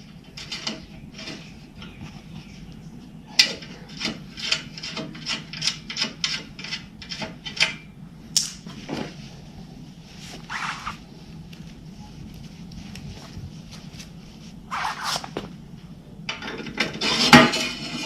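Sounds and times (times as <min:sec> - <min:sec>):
metal scraping and rubbing: 0:14.2 - 0:15.4, 0:16.4 - 0:18.0.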